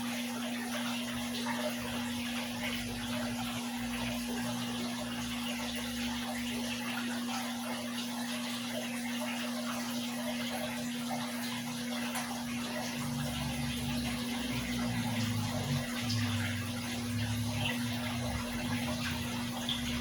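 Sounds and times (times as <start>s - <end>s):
aquarium water splashing: 0.0s - 20.0s
constant low hum: 9.0s - 20.0s.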